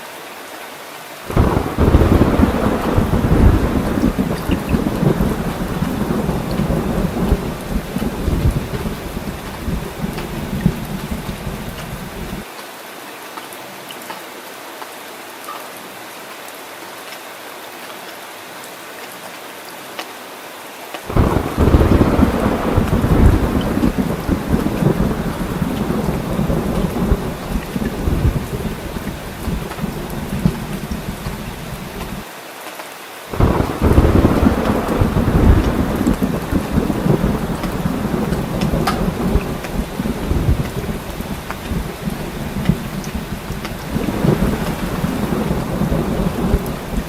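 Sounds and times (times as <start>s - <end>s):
heavy rain: 0.0s - 47.0s
thunder rumbling: 1.3s - 12.4s, 21.1s - 32.2s, 33.3s - 47.0s.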